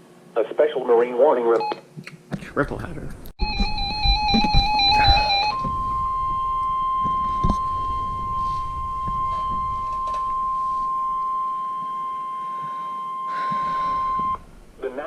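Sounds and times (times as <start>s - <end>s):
data burst: 3.4s - 15.0s
steady high alarm tone: 3.4s - 15.0s.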